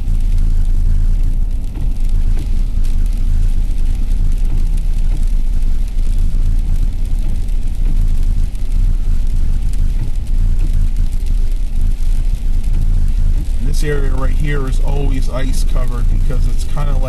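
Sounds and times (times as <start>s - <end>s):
car driving on snowy road: 0.0s - 17.0s.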